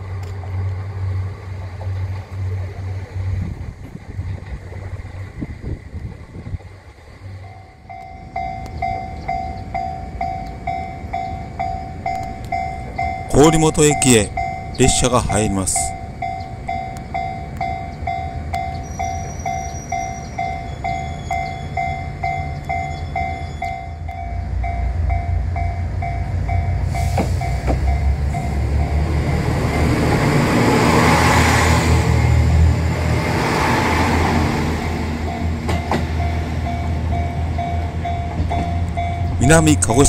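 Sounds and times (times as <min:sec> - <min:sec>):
train rumble: 0:00.0 - 0:40.0
level-crossing alarm ding: 0:07.5 - 0:24.9, 0:36.2 - 0:40.0.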